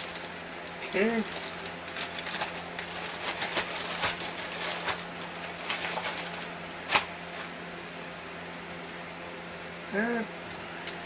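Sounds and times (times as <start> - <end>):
food handling rustling: 0.0 - 7.5.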